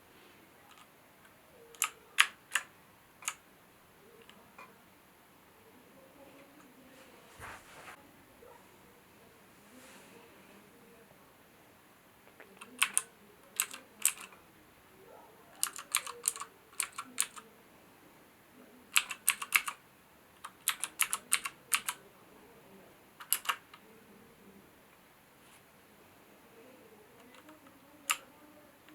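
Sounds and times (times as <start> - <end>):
mechanical keyboard clicking: 0.7 - 0.9, 1.7 - 3.4, 12.5 - 14.4, 15.6 - 17.4, 18.9 - 19.8, 20.4 - 22.0, 23.2 - 23.8, 27.2 - 28.3.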